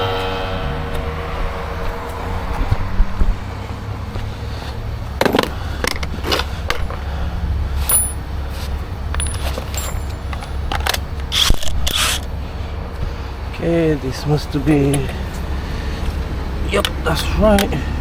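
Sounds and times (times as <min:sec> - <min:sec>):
metal tools clinking and clanking: 0:07.8 - 0:08.5, 0:09.1 - 0:11.1.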